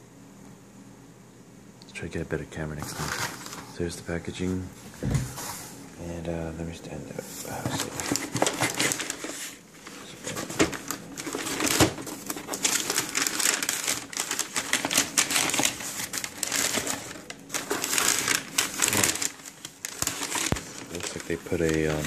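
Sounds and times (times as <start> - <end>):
paper wrapping crinkling: 7.3 - 22.0.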